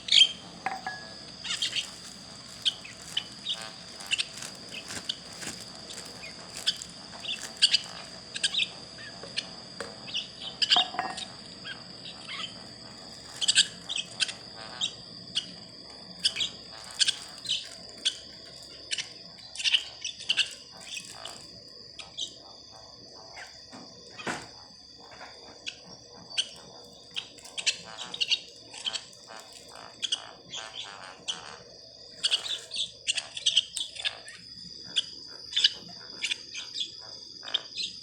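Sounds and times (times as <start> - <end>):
steady high-pitched tone: 0.0 - 1.8
baby bird chirping: 1.1 - 9.5.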